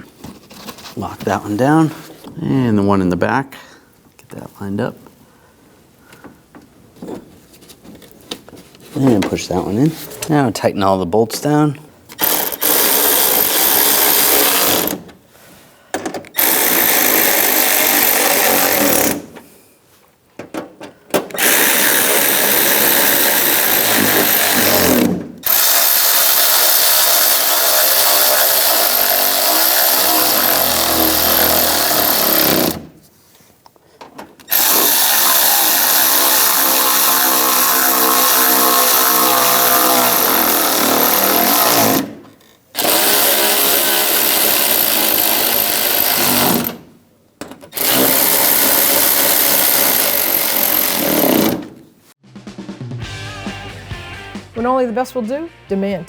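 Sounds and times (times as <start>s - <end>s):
power tool driving bolts: 12.1s - 15.2s, 15.9s - 19.5s, 20.4s - 33.0s, 34.1s - 51.9s.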